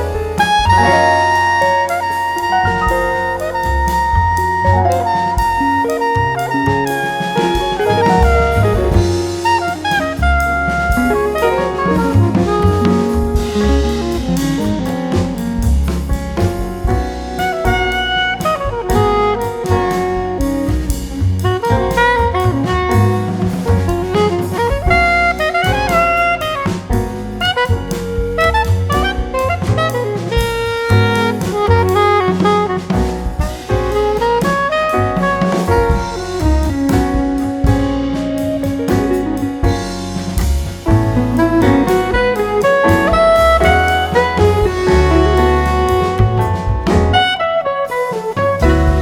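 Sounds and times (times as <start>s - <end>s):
bass line: 0.0s - 49.0s
drum kit: 0.0s - 49.0s
horn melody: 0.0s - 49.0s
jazz saxophone: 0.0s - 49.0s.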